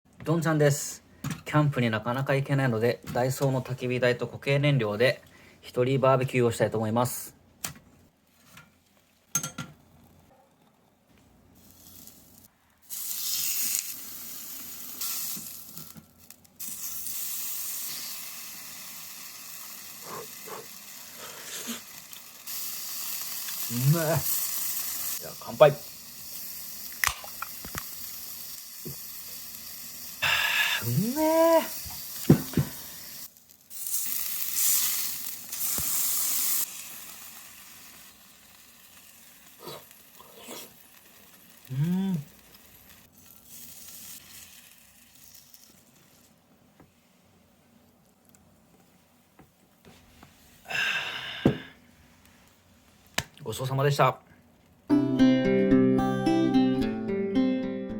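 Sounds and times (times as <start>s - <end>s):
food sizzling on a grill: 11.6s - 46.2s.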